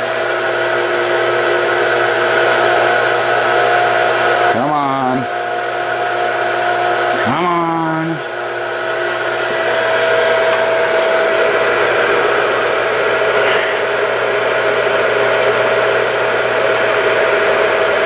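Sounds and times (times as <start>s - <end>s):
electric pump motor whining: 0.0s - 18.0s.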